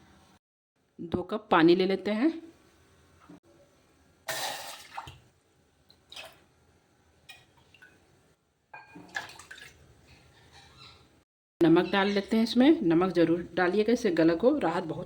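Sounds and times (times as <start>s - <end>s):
water splashing: 4.3s - 5.3s, 9.0s - 9.9s
water pouring from a cup: 9.0s - 9.8s.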